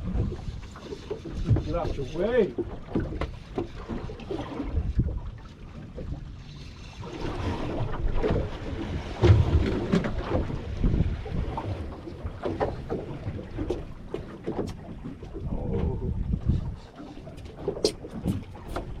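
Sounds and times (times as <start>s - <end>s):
knocks and clatter on boat: 0.0s - 19.0s
water sloshing around boat: 0.0s - 19.0s
wind buffeting microphone: 7.4s - 19.0s.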